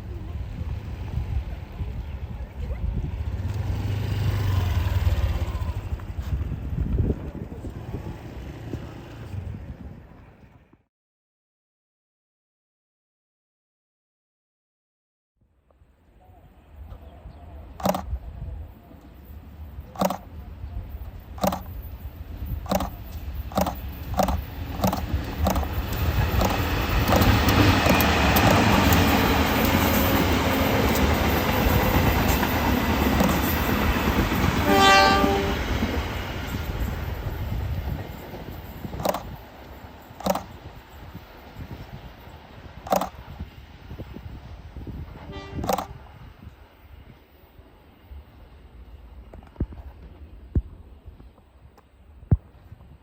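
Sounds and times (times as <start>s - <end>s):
train rumbling past: 0.0s - 10.8s, 16.1s - 51.5s
train wheels clicking over rail joints: 17.8s - 18.2s, 19.0s - 44.1s, 45.2s - 46.6s
train horn blast: 34.5s - 36.0s, 45.2s - 46.2s.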